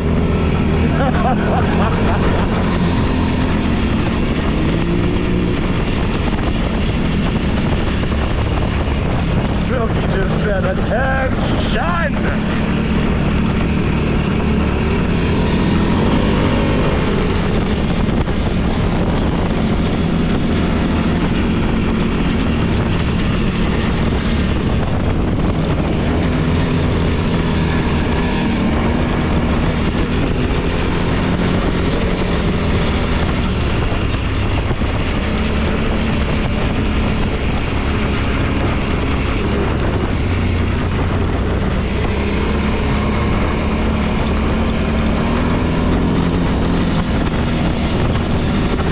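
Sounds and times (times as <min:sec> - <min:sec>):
off-road vehicle engine running: 0:00.0 - 0:48.9.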